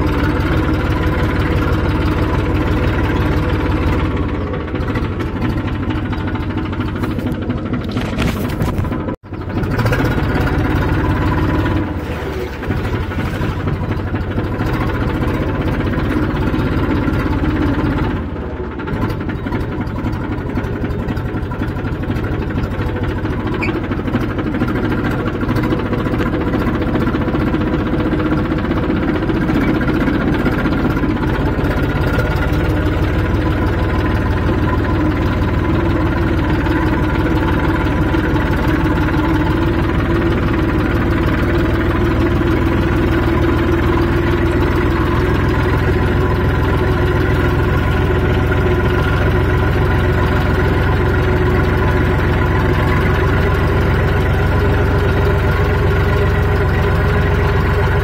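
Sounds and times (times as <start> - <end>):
tractor engine droning: 0.0 - 58.0.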